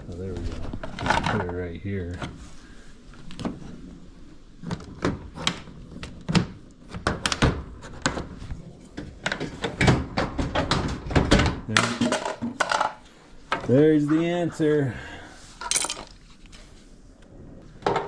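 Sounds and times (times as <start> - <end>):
dryer panels knocking: 9.0 - 12.6.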